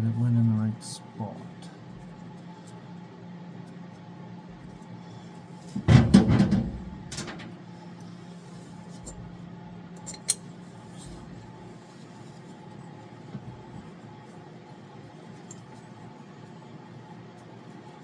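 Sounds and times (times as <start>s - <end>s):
steady low hum: 0.0s - 18.0s
metal tools clanking: 10.0s - 10.4s.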